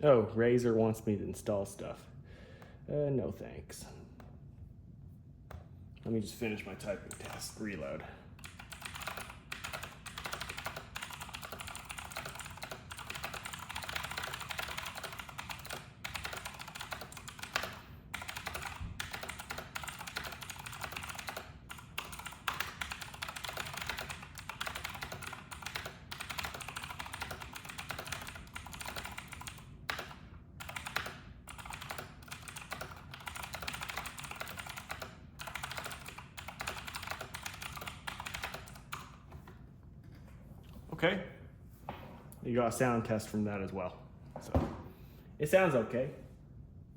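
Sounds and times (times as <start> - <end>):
fast typing on clicky keyboard: 7.1 - 7.5, 8.4 - 39.2.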